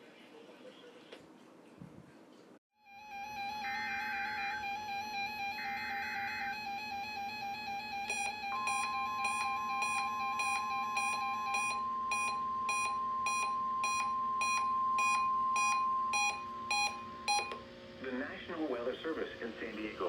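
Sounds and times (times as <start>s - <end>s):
steady high tone: 2.8s - 18.1s
pulsing beep: 3.3s - 17.6s
radio beeping: 3.6s - 17.6s.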